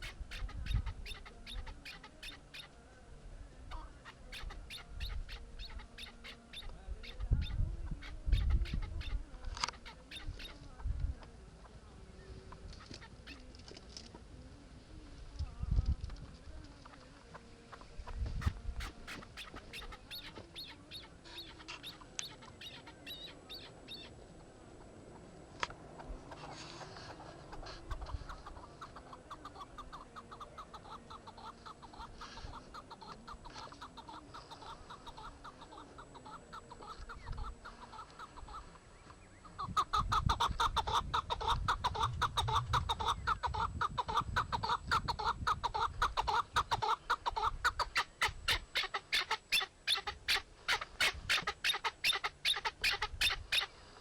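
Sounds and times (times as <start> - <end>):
fast repeated animal chirping: 0.0 - 2.7, 4.0 - 10.6, 18.1 - 24.1, 27.9 - 38.6, 39.6 - 53.7.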